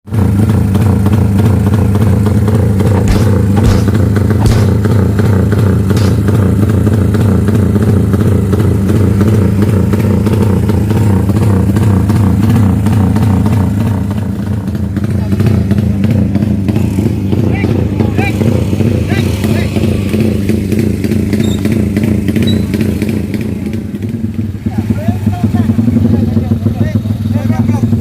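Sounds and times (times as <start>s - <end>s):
motorcycle engine idling fast: 0.0s - 28.0s
sharp clicks: 3.1s - 4.8s.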